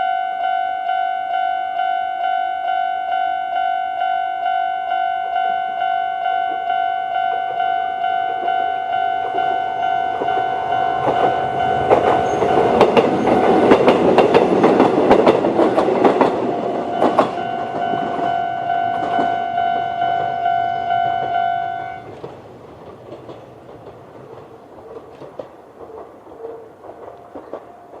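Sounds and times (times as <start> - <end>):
level-crossing bell dinging: 0.0 - 13.9, 16.4 - 22.1
train wheels clacking over rail joints: 9.2 - 19.4, 22.0 - 28.0.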